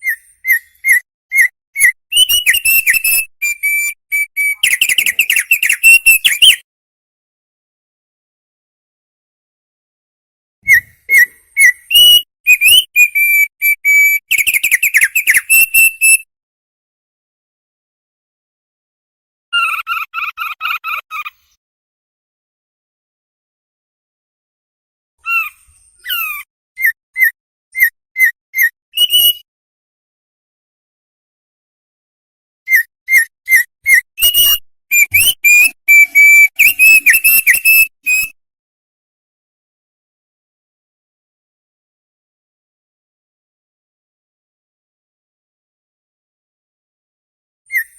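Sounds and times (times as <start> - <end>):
songbird whistled song: 0.0 - 6.6, 10.6 - 16.3, 25.2 - 29.5, 32.7 - 38.4, 47.7 - 47.9.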